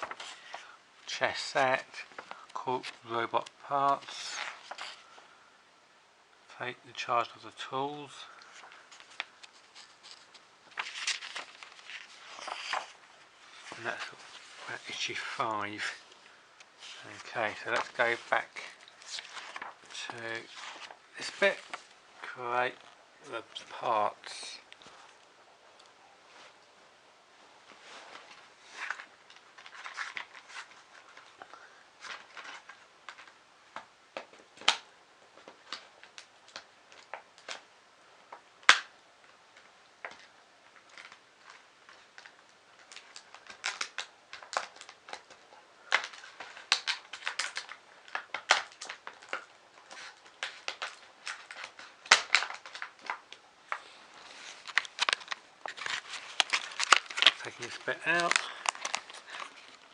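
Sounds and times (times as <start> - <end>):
plastic packaging crackling: 0.0 - 5.4, 8.0 - 25.2, 28.2 - 33.4, 40.0 - 59.9.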